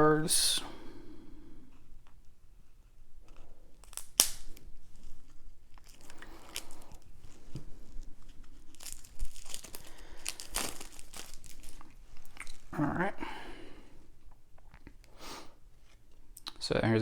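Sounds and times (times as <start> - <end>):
plastic wrap crinkling: 3.1 - 12.9
plastic wrap tearing: 3.7 - 12.8.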